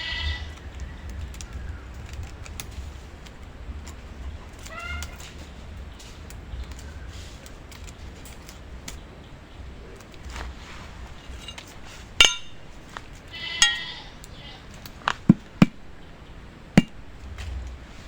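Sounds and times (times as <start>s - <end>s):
light clicks and knocks: 10.0s - 17.9s.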